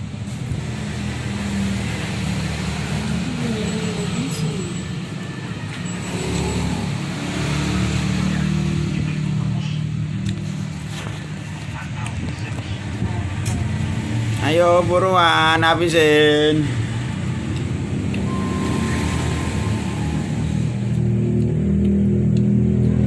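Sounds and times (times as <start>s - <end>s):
engine humming: 0.0s - 23.0s
brief wavering tone: 18.2s - 21.1s.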